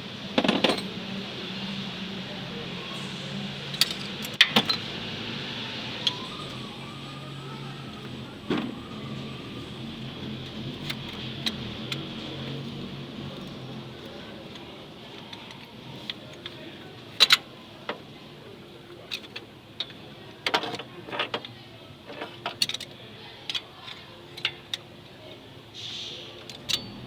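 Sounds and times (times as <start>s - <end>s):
tools clicking and knocking: 10.8s - 12.1s
short hiss: 25.8s - 26.3s.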